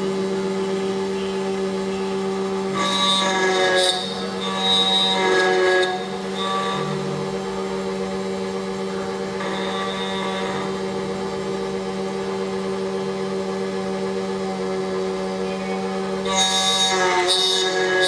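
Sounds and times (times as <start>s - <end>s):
key cutting machine motor hum: 2.2s - 15.2s.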